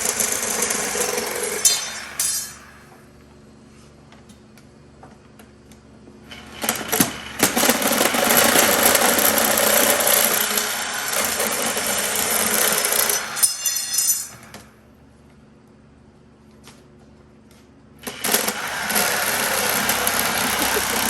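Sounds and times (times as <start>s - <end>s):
power tool cutting metal: 0.0s - 2.8s, 18.1s - 21.0s.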